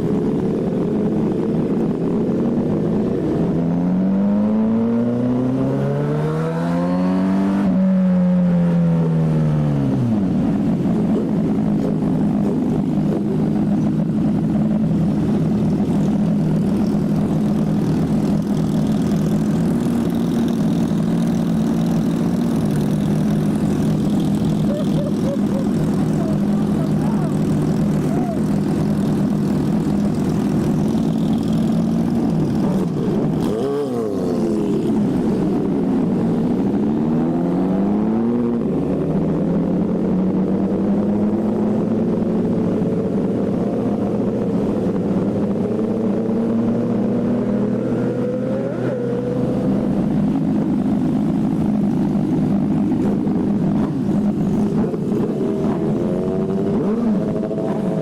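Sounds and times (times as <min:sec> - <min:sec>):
motorcycle engine cruising: 0:00.0 - 0:58.0.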